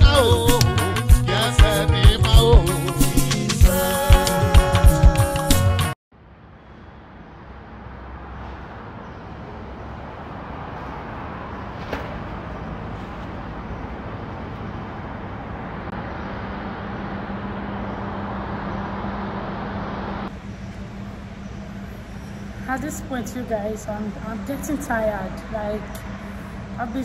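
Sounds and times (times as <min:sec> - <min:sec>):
street traffic passing: 0:00.0 - 0:27.0
low engine hum: 0:06.2 - 0:27.0.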